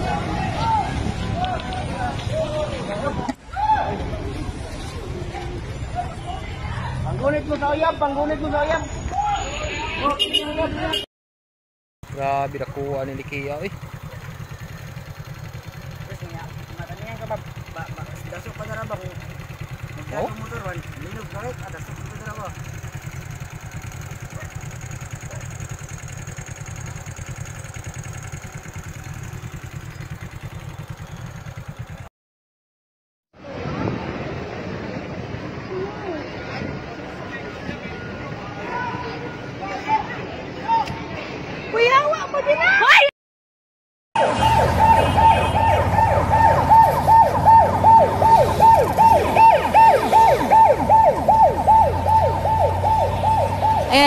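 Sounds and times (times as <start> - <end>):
motorcycle engine idling: 12.0 - 32.1, 44.4 - 54.0
siren on fast yelp: 44.2 - 54.0.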